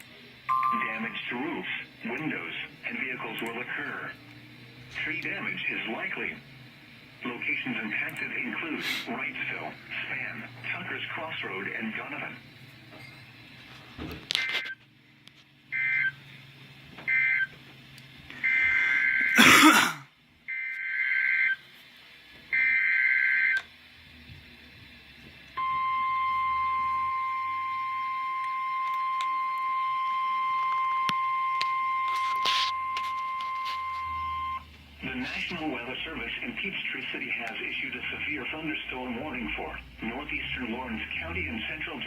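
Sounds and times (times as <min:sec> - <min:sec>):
steady alarm tone: 0:00.5 - 0:03.0, 0:15.7 - 0:16.2, 0:17.1 - 0:17.6, 0:18.4 - 0:19.6, 0:20.5 - 0:21.6, 0:22.5 - 0:23.6, 0:25.6 - 0:36.5
digital data bursts screeching: 0:00.8 - 0:04.2, 0:04.9 - 0:13.2, 0:15.7 - 0:16.2, 0:18.4 - 0:19.4, 0:25.6 - 0:42.0
crackle of noise: 0:01.1 - 0:19.5, 0:26.6 - 0:42.0.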